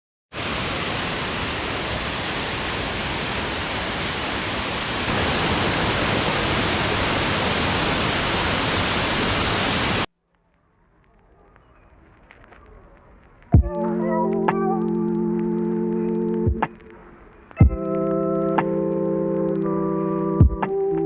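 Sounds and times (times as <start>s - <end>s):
waterfall rushing: 0.4s - 10.1s.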